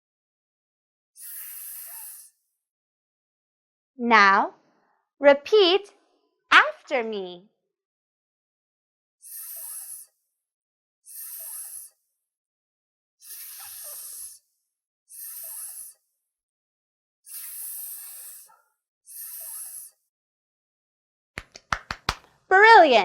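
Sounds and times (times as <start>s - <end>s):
person hissing sss: 1.2s - 2.3s, 11.1s - 11.9s, 13.2s - 14.4s, 15.1s - 16.0s, 17.3s - 18.5s.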